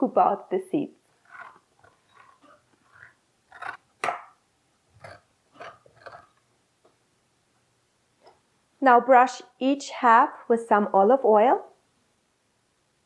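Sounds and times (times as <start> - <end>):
scraping squash pulp: 1.2 - 4.4.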